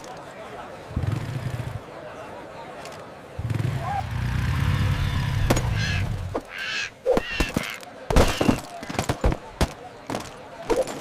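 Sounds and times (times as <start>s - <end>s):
seagull squawks: 5.7s - 8.6s.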